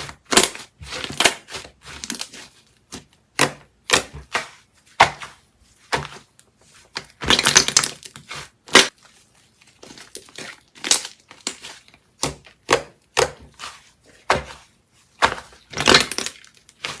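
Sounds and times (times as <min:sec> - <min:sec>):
slime crackling and popping: 0:09.8 - 0:13.3.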